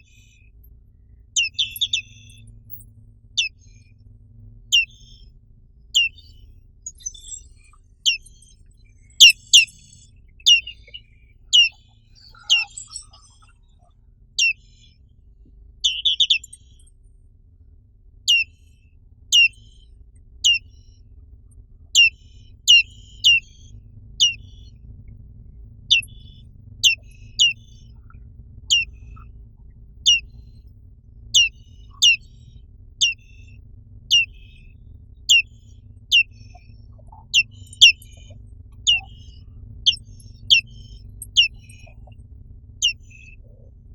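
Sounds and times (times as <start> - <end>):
bird twittering: 0.0 - 0.4, 1.4 - 2.5, 3.4 - 3.9, 4.7 - 5.3, 5.9 - 15.0, 15.8 - 16.8, 18.3 - 18.7, 19.3 - 19.8, 20.4 - 21.0, 21.9 - 24.8, 25.9 - 29.3, 30.0 - 30.7, 31.3 - 42.2, 42.8 - 43.7
faint low hum: 0.0 - 43.9
bird calling short sharp notes: 10.5 - 13.5, 28.7 - 29.2, 35.3 - 42.1.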